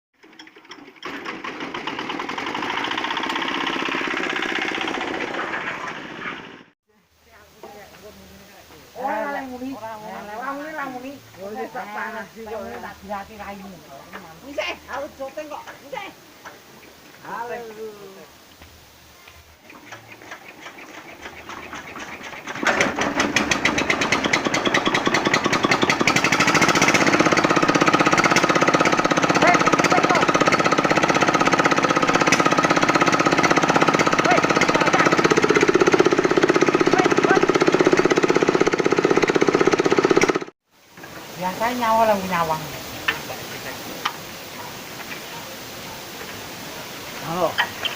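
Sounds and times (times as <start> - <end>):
concrete mixer diesel engine running: 0.2 - 6.7, 19.6 - 40.5.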